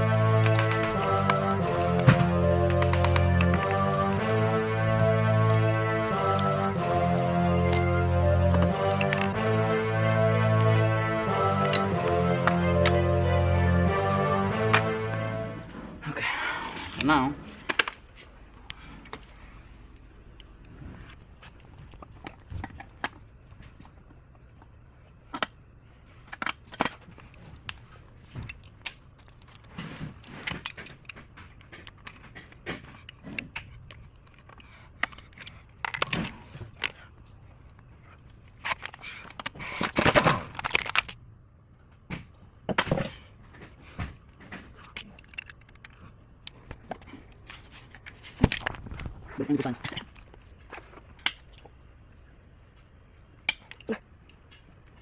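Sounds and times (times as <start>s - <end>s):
metal tools clinking and scraping: 25.2s - 27.6s
metal parts clattering: 26.2s - 27.4s, 38.6s - 41.2s, 44.8s - 46.0s.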